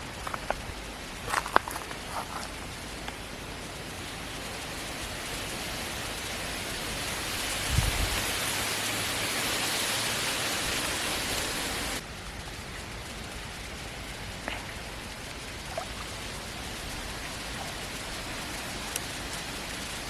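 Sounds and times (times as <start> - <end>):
outdoor noise hiss: 0.0 - 20.0
faint ticks: 12.2 - 20.0.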